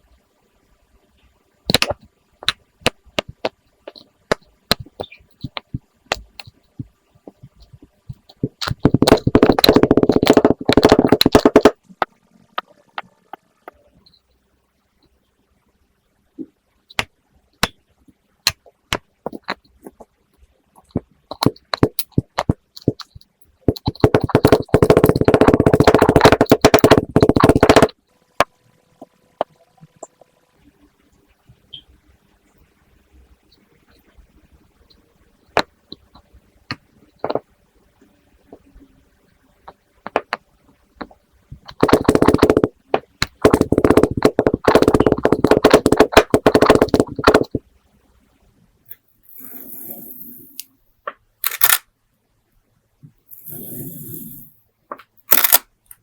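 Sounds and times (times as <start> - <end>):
small clicks: 51.4 - 51.8, 54.3 - 56.0.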